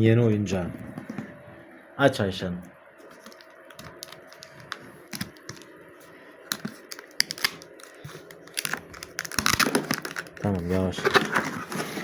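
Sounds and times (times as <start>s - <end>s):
cardboard flaps scraping: 10.5s - 12.0s.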